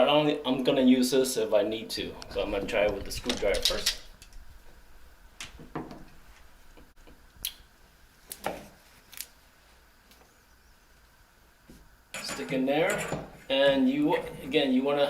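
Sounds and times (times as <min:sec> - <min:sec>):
faint room hiss: 0:00.0 - 0:15.0
hand tools clicking and knocking: 0:12.2 - 0:13.9.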